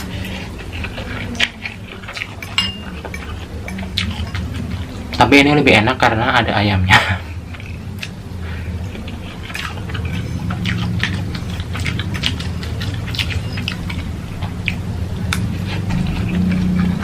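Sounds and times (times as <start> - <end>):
person chewing noodles: 0.0 - 5.6, 7.3 - 17.0
steady low hum: 0.0 - 17.0.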